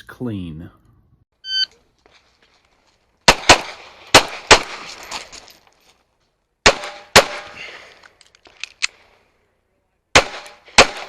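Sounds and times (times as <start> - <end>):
pistol shots with ringing echo: 3.3 - 4.9, 6.6 - 7.6, 10.1 - 11.0.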